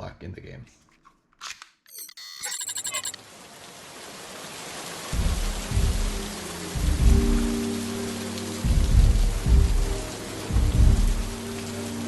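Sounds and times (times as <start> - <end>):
steady rain hiss: 3.1 - 12.0.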